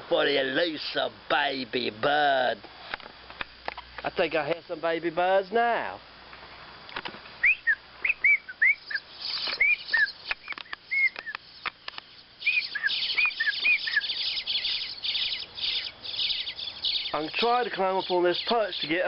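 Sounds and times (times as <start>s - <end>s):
arched bird chirps: 7.4s - 19.0s
high bird twittering: 7.4s - 19.0s.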